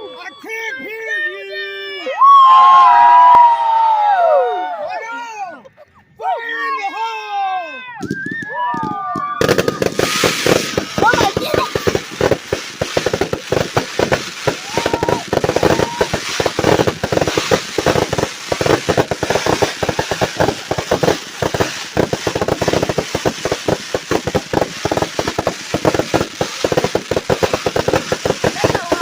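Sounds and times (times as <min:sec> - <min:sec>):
fireworks crackling: 0:08.0 - 0:29.0
fireworks popping and banging: 0:08.0 - 0:29.0.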